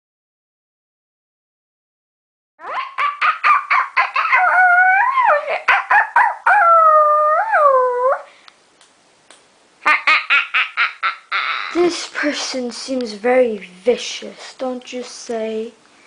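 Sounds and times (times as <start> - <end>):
animal yelping and howling: 2.6 - 8.3, 10.4 - 11.8.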